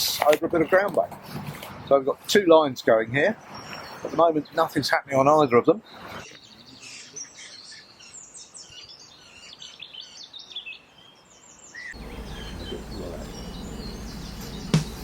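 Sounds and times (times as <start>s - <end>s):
small birds chirping: 0.0s - 15.0s
steady low rumble: 12.0s - 15.0s
sharp knock: 14.6s - 15.0s.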